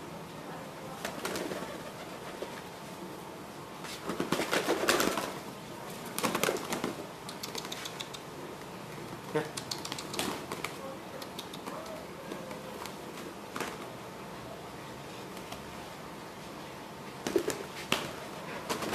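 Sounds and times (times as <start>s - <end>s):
sharp clicks: 7.2s - 8.3s, 9.6s - 10.4s, 11.2s - 12.0s.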